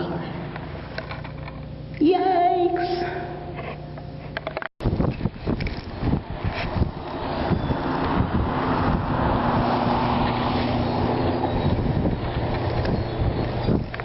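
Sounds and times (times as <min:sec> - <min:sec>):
vehicle engine humming: 0:00.0 - 0:14.0
wind noise on microphone: 0:04.8 - 0:14.0.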